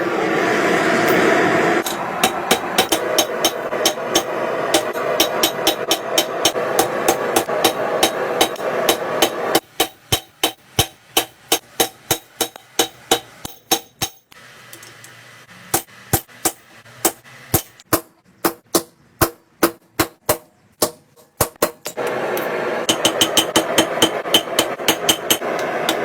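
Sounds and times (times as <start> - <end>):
steady rushing noise: 0.0 - 13.3
hammer striking steel on anvil: 1.8 - 14.4, 15.8 - 26.0.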